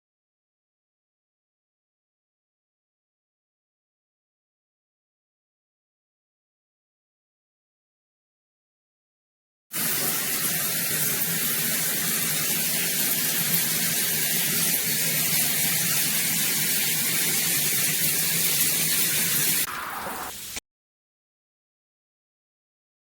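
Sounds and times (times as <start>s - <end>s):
shower spraying water: 9.7s - 20.6s.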